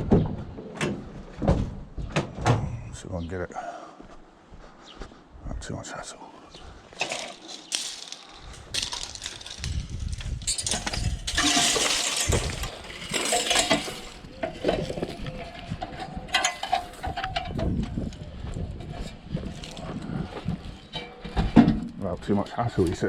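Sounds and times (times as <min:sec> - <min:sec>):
scrap metal clanking and rattling: 0:06.9 - 0:17.8, 0:18.8 - 0:22.0.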